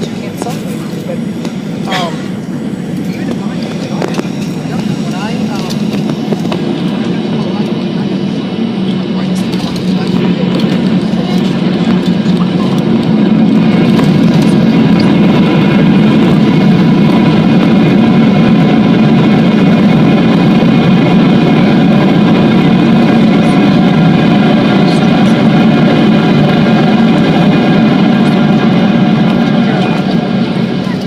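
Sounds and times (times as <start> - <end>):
jet engine drone in cabin: 0.0 - 31.0.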